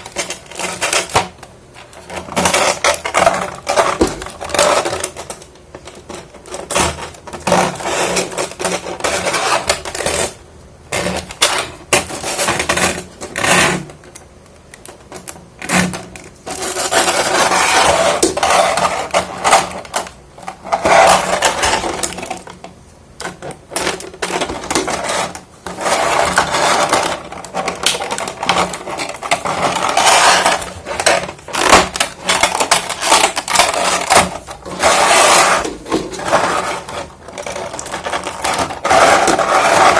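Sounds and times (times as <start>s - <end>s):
plastic parts clicking and clattering: 0.0s - 10.4s, 11.0s - 39.9s
plastic packaging crinkling: 23.3s - 39.9s.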